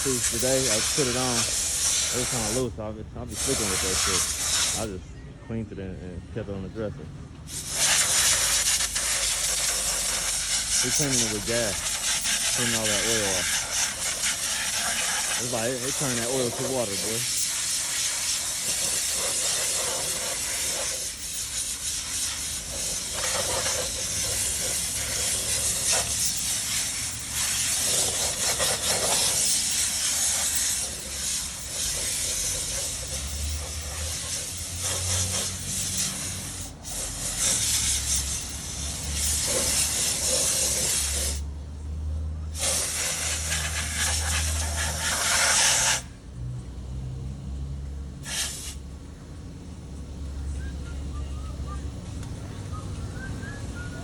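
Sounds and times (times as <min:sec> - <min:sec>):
pressurized spray hissing: 0:00.0 - 0:02.7, 0:03.4 - 0:04.9, 0:07.5 - 0:41.4, 0:42.6 - 0:46.1, 0:48.2 - 0:48.8.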